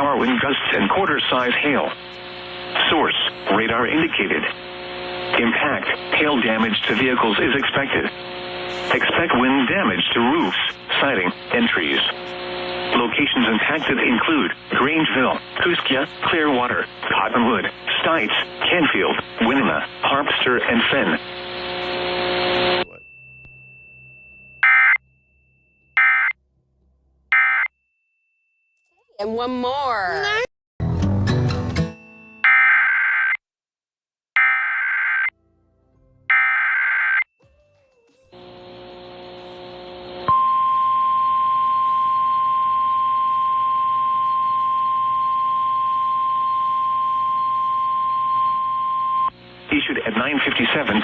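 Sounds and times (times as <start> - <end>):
radio receiver hiss: 0.0 - 23.0, 38.4 - 51.0
warbling data tones: 0.0 - 26.4, 38.4 - 51.0
steady high alarm tone: 21.8 - 26.4, 27.3 - 29.4, 36.3 - 37.3, 38.3 - 49.4.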